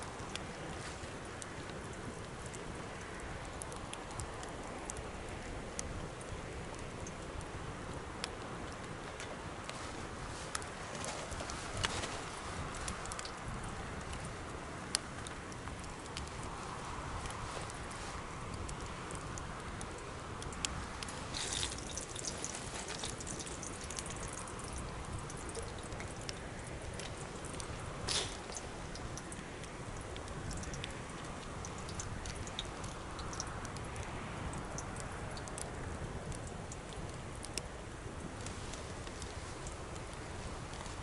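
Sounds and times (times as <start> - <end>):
bonfire crackling: 0.0 - 41.0
rush of flame: 0.1 - 33.8
fire pop: 27.0 - 28.7.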